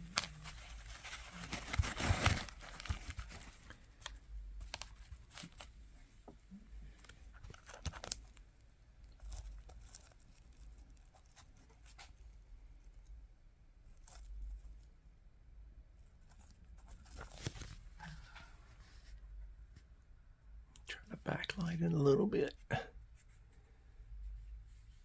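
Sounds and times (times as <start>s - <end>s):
packaging rustling and tearing: 0.0s - 5.7s, 7.0s - 8.4s, 17.0s - 17.8s.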